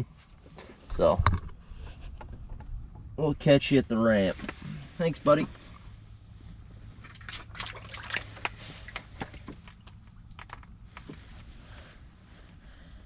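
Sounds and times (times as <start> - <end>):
steady low hum: 0.0 - 13.0
sharp clicks and knocks of handling: 8.4 - 11.2.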